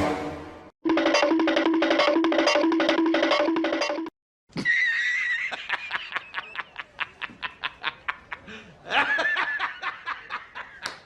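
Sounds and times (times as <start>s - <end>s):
short musical loop: 0.9s - 4.1s.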